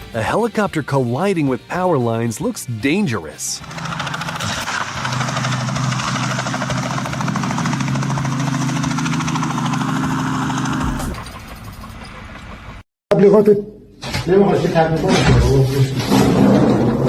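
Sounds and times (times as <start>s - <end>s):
helicopter rotor blade chop: 3.6s - 12.8s.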